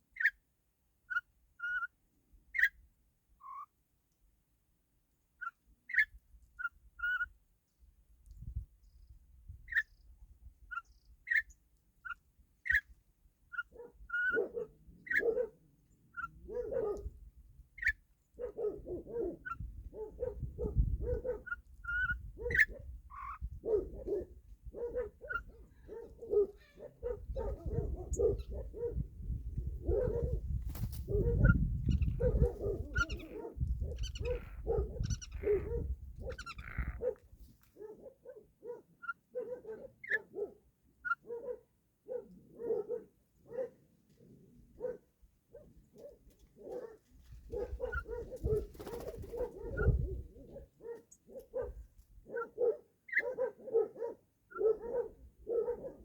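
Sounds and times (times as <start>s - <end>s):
small birds chirping: 30.7s - 37.1s
low animal calls: 31.1s - 37.2s.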